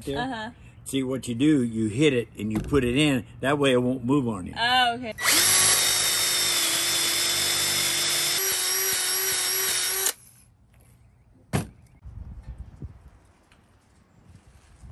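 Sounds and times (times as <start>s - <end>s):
electric drill boring into wood: 5.2s - 10.2s.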